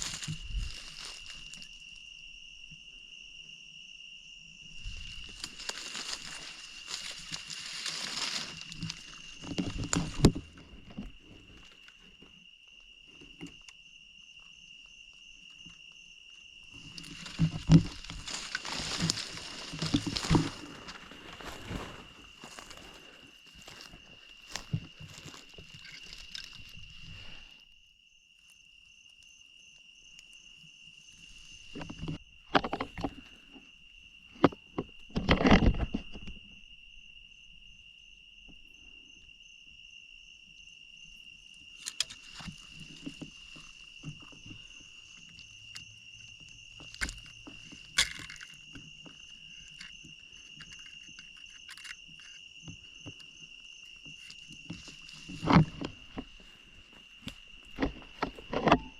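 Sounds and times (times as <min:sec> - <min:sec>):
twigs snapping: 0:00.0 - 0:01.8, 0:04.8 - 0:12.0, 0:16.7 - 0:27.0, 0:41.7 - 0:53.3
rustling through brush: 0:00.0 - 0:02.0, 0:04.7 - 0:12.4, 0:16.6 - 0:27.7, 0:41.7 - 0:58.9
insects trilling: 0:00.0 - 0:58.9.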